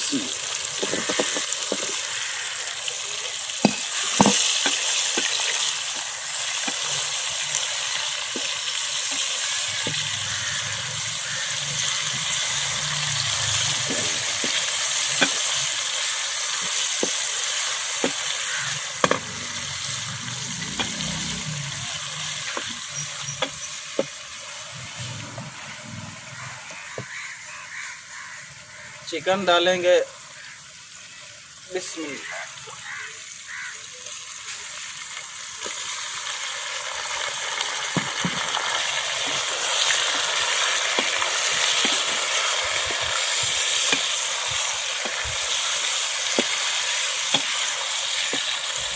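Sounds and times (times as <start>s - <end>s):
potatoes sizzling in a pot: 0.0s - 48.9s
spoon scraping a pan: 0.8s - 2.0s.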